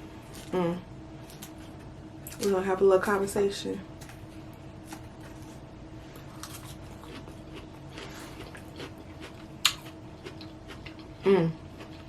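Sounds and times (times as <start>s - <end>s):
chewing salad: 4.0s - 12.0s.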